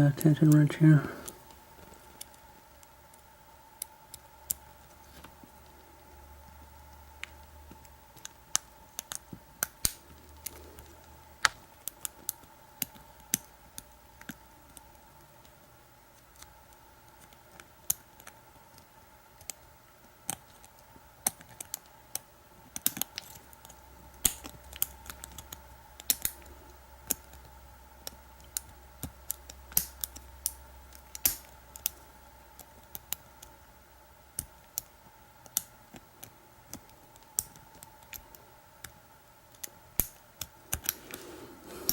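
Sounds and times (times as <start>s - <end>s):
faint steady hum: 0.0s - 41.9s.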